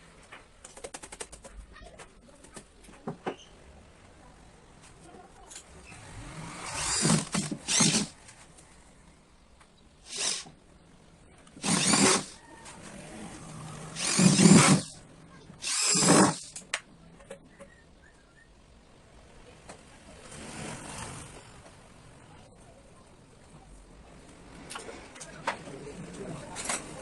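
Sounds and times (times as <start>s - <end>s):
electric drill driving screws: 6.3s - 8.1s, 10.1s - 10.5s, 11.6s - 12.4s, 13.7s - 15.0s, 15.6s - 16.6s.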